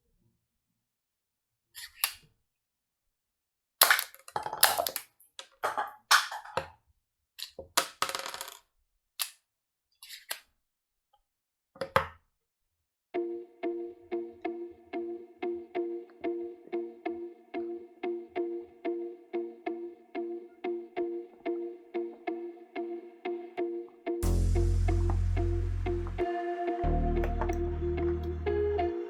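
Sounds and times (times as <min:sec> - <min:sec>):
plastic toy clicks and clatters: 0:03.8 - 0:06.6, 0:07.4 - 0:09.4.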